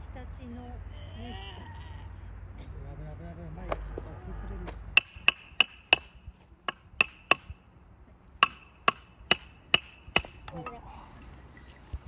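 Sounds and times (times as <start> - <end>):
firewood being chopped: 4.7 - 7.6, 8.4 - 10.8.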